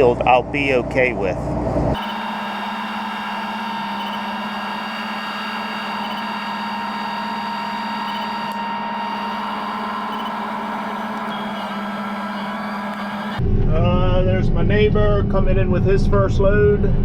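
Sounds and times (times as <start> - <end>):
combine harvester running: 1.5 - 13.4.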